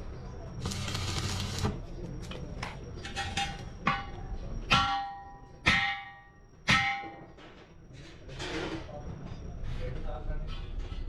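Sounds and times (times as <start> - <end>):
hammer ringing on metal rim: 3.9 - 7.3.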